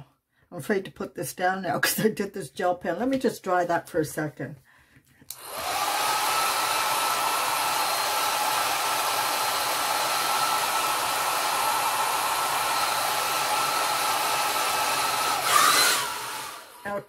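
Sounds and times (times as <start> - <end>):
hot-air dryer blowing: 5.3 - 17.0.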